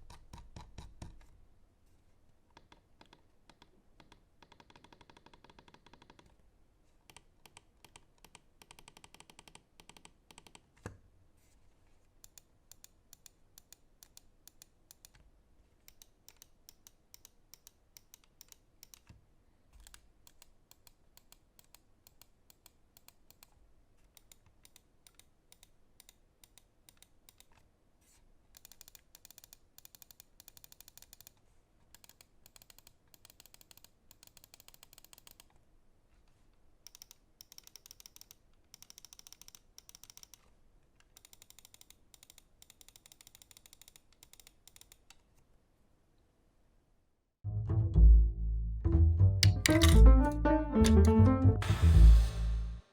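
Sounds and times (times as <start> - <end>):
mouse buttons clicking: 49.3 - 51.6.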